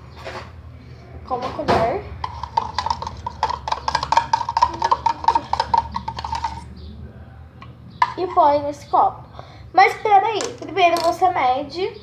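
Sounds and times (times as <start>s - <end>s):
spoon tapping against cup: 2.2s - 6.7s.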